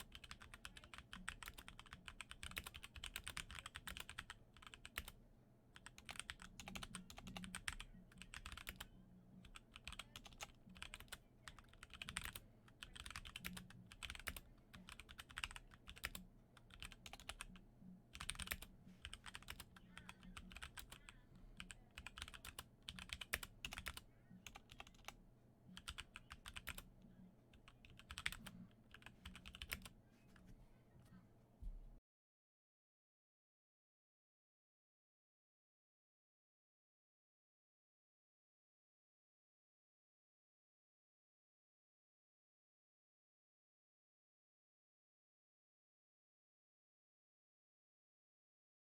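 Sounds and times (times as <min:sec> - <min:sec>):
mechanical keyboard typing: 0:00.0 - 0:05.2, 0:05.8 - 0:17.5, 0:18.1 - 0:21.0, 0:21.6 - 0:25.2, 0:25.8 - 0:26.9, 0:27.6 - 0:29.9.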